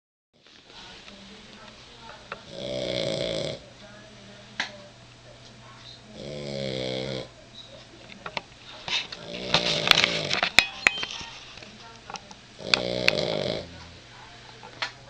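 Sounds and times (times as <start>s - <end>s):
dog snoring: 2.4s - 3.7s, 6.1s - 7.3s, 9.2s - 10.4s, 12.6s - 14.1s.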